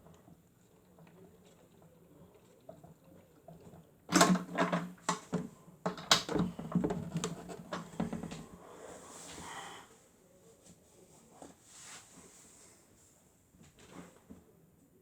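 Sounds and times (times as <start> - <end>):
toy washing machine motor humming: 0.0 - 4.5.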